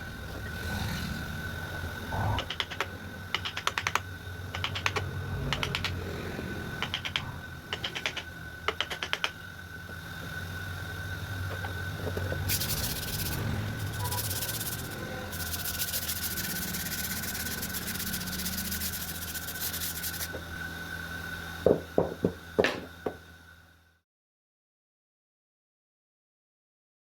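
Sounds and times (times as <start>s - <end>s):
low machine hum: 0.0s - 24.0s
wood sanding by hand: 12.4s - 20.4s.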